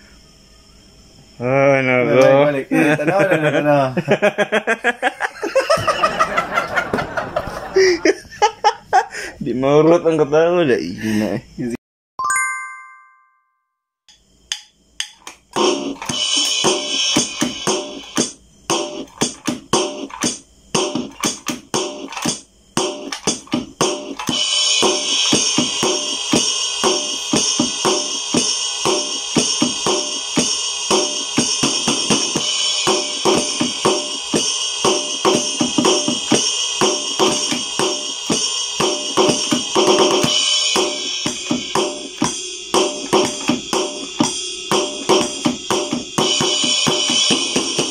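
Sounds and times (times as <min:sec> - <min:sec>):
electronic drum hits: 0:15.5 - 0:47.9
cymbal wash: 0:23.8 - 0:47.9.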